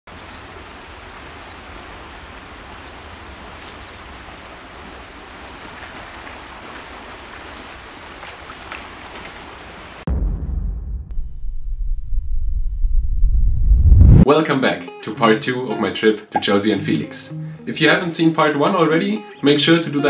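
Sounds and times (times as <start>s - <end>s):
river water rushing: 0.1s - 10.0s
loud deep rumble: 10.1s - 14.2s.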